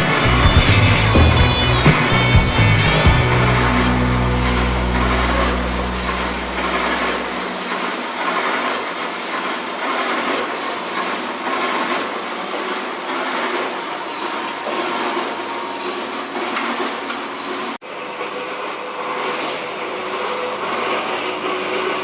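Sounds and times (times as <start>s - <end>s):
low hum: 0.0s - 9.1s.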